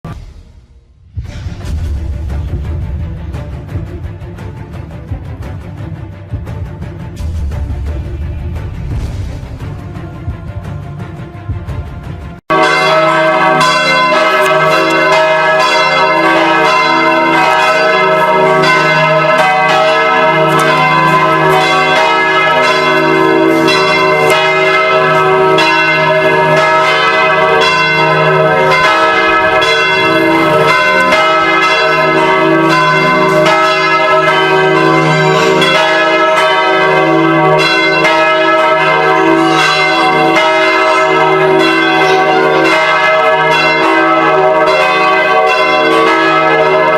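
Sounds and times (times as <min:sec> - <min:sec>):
church bells pealing: 0:12.3 - 0:46.9.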